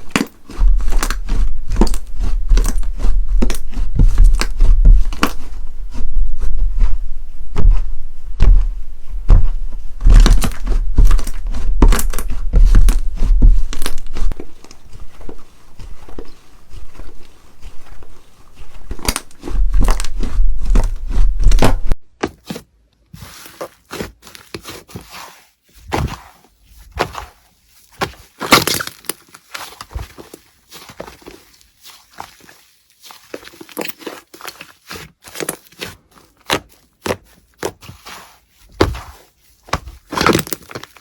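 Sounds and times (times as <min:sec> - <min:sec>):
slime crackling and popping: 0:00.0 - 0:05.5, 0:09.3 - 0:14.8, 0:18.9 - 0:21.9, 0:28.4 - 0:29.9.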